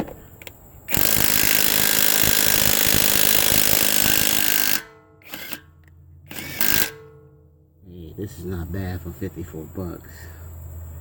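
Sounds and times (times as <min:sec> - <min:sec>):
impact wrench rattling on lug nut: 0:00.9 - 0:07.3.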